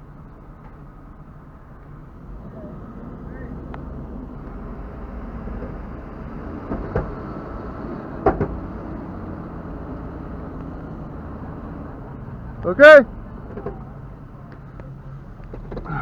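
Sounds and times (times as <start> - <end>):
vehicle engine running: 0.0 - 16.0
short knocks: 8.2 - 8.9.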